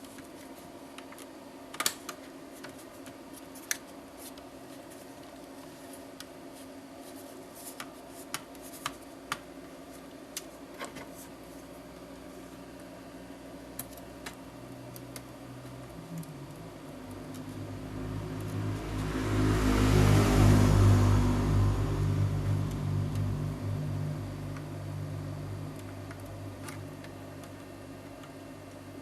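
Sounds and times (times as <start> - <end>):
steady hum: 0.0 - 29.0
low rushing noise: 17.0 - 27.0.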